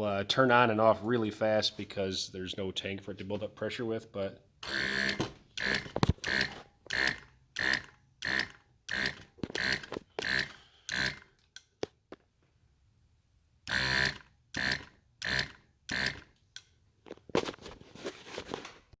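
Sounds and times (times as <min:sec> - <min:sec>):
air compressor short-cycling: 0:04.6 - 0:11.4, 0:13.7 - 0:16.4.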